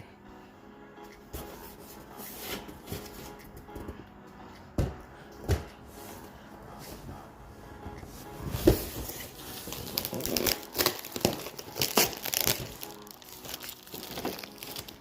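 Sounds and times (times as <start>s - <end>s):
packaging crinkling and rustling: 8.6s - 15.0s.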